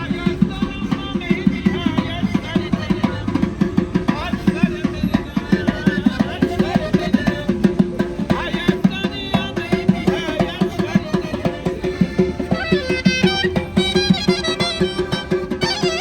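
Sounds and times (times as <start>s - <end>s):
fast steady drum beat: 0.0s - 16.0s
pitch-bending melody: 10.1s - 16.0s.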